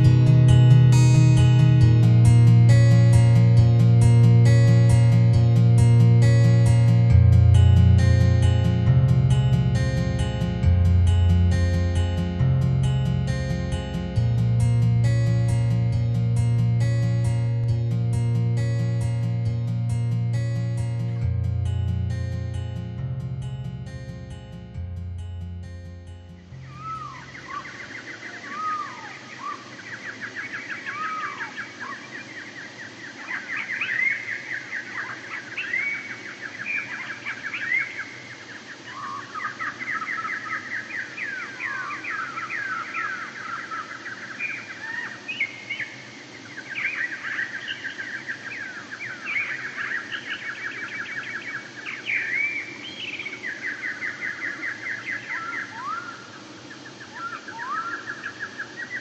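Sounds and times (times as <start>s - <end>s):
birds chattering trills: 25.6s - 59.0s
birds whistling swooping notes: 26.5s - 59.0s.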